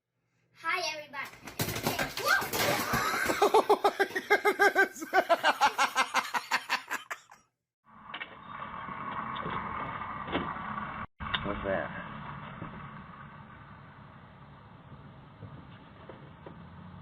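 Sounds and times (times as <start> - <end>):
rapid rhythmic laughter: 2.9 - 7.4.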